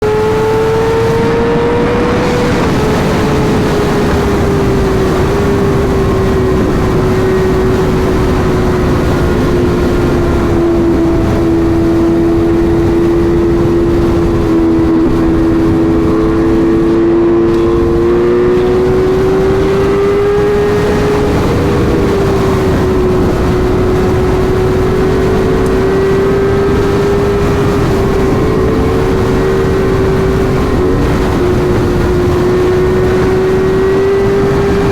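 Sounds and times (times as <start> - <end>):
loud wind rush: 0.0 - 34.9
motorcycle engine at high revs: 0.0 - 34.9.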